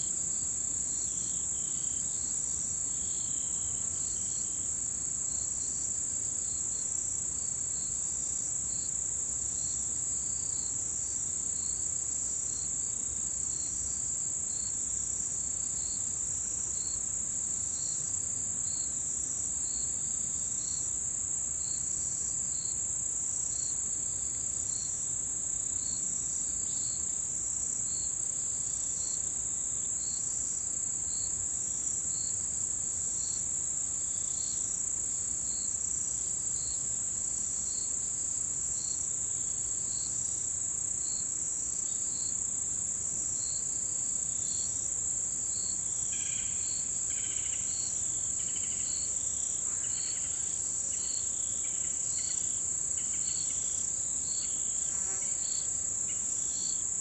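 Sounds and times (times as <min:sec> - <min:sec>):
faint irregular insect calls: 0:00.0 - 0:57.0
insect chirping: 0:00.1 - 0:09.0, 0:13.5 - 0:57.0
insect high-pitched trill: 0:45.5 - 0:57.0.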